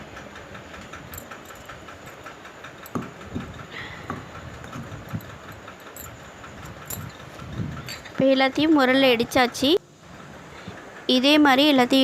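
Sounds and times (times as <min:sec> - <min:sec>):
pestle pounding in a mortar: 0:02.9 - 0:03.5.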